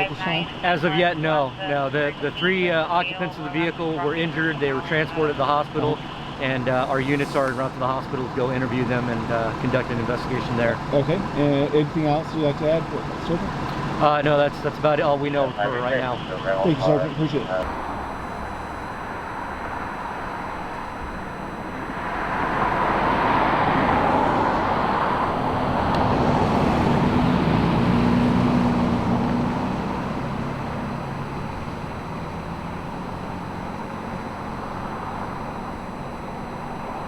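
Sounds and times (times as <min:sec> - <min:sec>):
motor vehicle passing by: 0:22.0 - 0:33.2.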